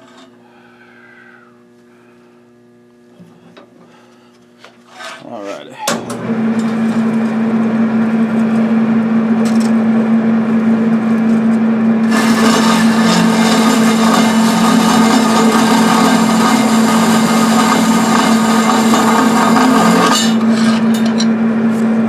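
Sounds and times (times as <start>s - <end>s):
bandsaw motor hum: 5.9s - 22.0s
saw blade cutting steel: 12.0s - 21.3s.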